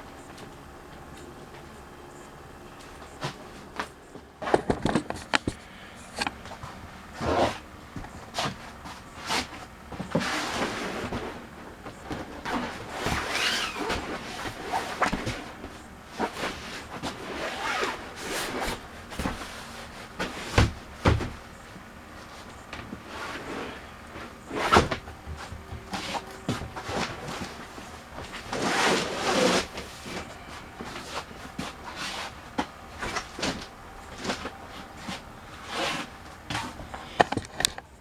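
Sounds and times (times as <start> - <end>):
nylon bedding rustling: 6.4 - 37.2.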